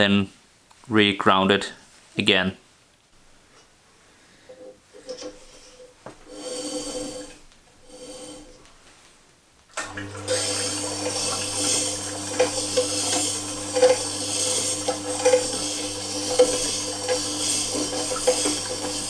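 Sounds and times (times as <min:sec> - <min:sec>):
chisel grinding on wheel: 0:05.0 - 0:08.6, 0:10.2 - 0:19.0
sharpening machine motor humming: 0:06.3 - 0:08.5, 0:09.8 - 0:19.0.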